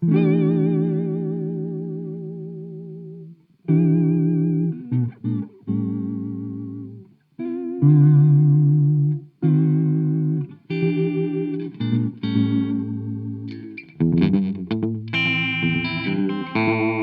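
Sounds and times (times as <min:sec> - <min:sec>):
electric guitar chords with warbling delay: 0:09.5 - 0:17.0.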